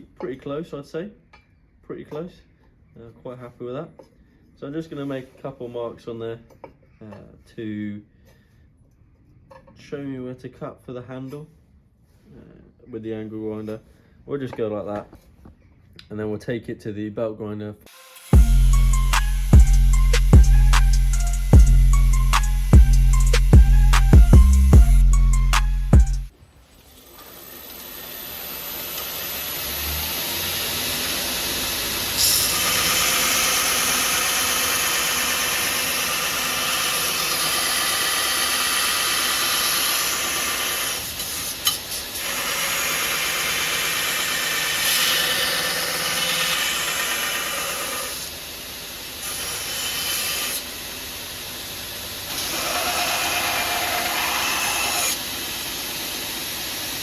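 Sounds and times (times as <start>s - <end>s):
power grinder grinding steel: 17.9s - 57.0s.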